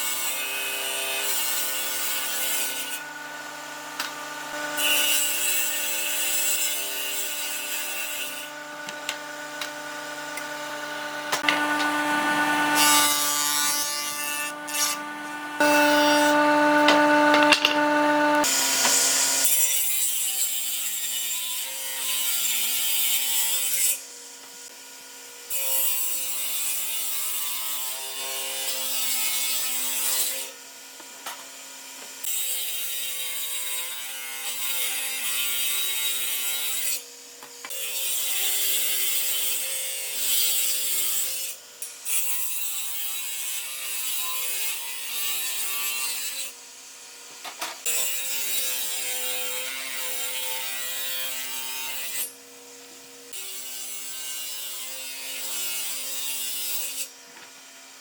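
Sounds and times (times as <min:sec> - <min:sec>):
power tool working wood: 0:00.1 - 0:19.7.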